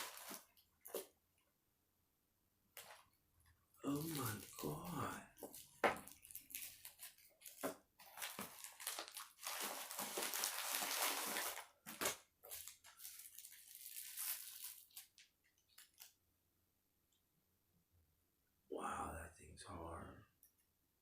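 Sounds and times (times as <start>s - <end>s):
packaging crinkling and tearing: 0.0s - 1.1s, 3.9s - 16.2s.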